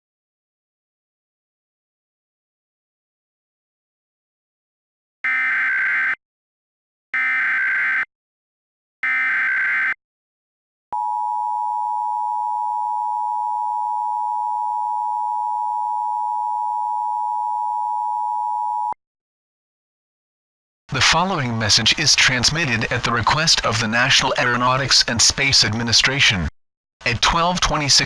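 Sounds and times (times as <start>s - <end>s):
two-tone alarm: 5.2s - 6.2s, 7.2s - 8.1s, 9.0s - 10.0s, 11.0s - 19.0s.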